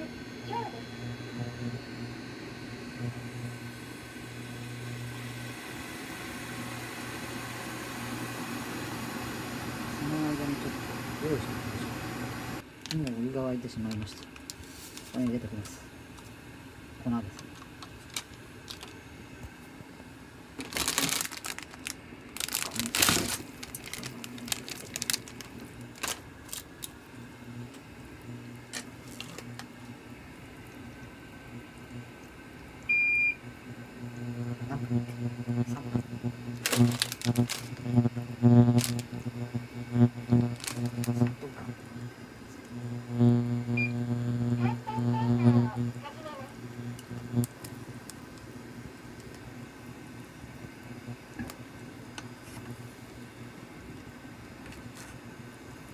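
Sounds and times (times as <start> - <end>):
induction cooktop humming: 0.0 - 55.9
soup packet crinkling: 17.6 - 19.0, 20.6 - 27.0, 28.7 - 29.7, 36.6 - 37.8, 38.8 - 39.2, 40.6 - 41.2.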